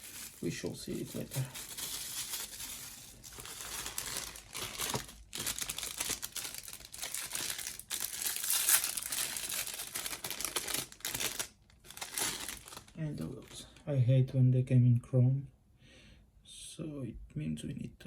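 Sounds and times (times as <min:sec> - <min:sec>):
packaging crinkling and rustling: 0:00.0 - 0:13.8.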